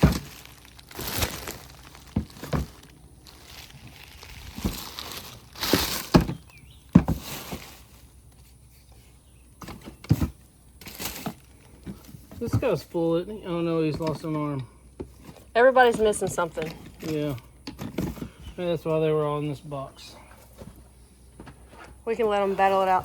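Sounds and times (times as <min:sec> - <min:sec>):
knocks and thuds of items: 0:00.0 - 0:02.9, 0:03.8 - 0:07.9, 0:09.6 - 0:13.0, 0:13.8 - 0:18.6
wrapping rustling: 0:00.0 - 0:08.1.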